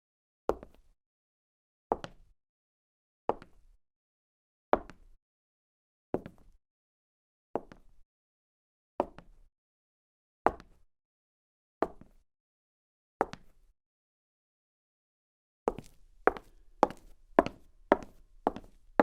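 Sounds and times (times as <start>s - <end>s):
woman's footsteps: 15.7s - 19.0s.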